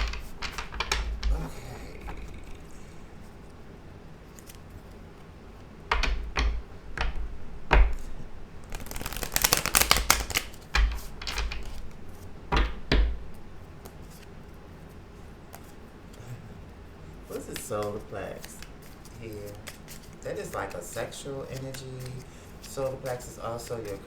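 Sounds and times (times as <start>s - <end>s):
cards tapping on a table: 0.0s - 2.7s, 5.9s - 14.0s
cards shuffling: 0.0s - 3.3s, 4.3s - 5.0s, 5.6s - 16.2s, 17.3s - 24.0s.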